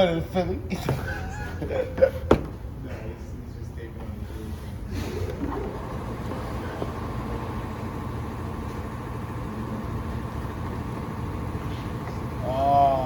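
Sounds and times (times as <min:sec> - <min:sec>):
engine rumbling: 0:02.6 - 0:13.0
faint steady whine: 0:03.2 - 0:13.0.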